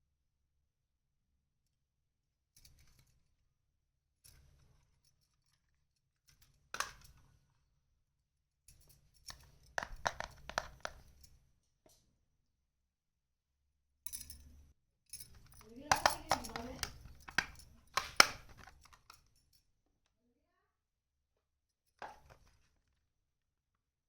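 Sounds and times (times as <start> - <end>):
small hard pieces clicking: 15.5 - 19.2.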